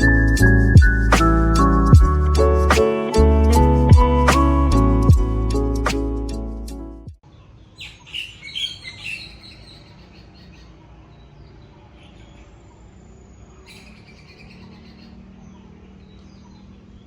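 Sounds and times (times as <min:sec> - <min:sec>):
background music: 0:00.0 - 0:07.2
faint outdoor ambience: 0:00.0 - 0:17.0
birds chirping: 0:07.2 - 0:17.0.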